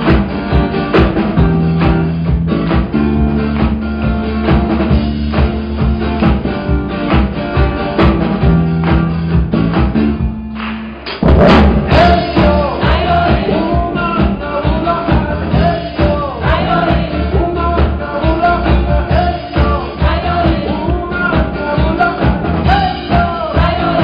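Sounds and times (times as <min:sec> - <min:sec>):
live band playing pop-rock: 0:00.0 - 0:24.0
man singing lead vocal: 0:11.8 - 0:24.0.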